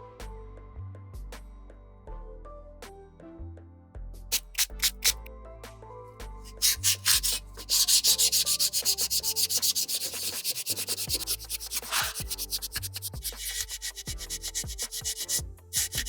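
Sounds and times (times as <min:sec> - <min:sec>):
hand sanding strokes: 0:04.3 - 0:05.2, 0:06.5 - 0:16.0.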